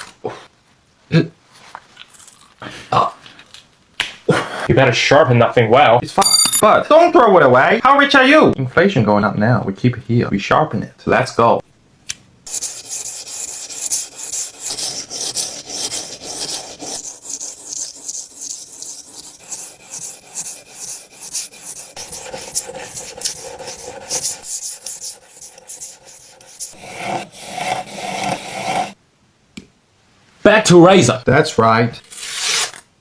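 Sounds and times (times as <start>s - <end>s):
scraper blade rasping: 12.5s - 29.0s.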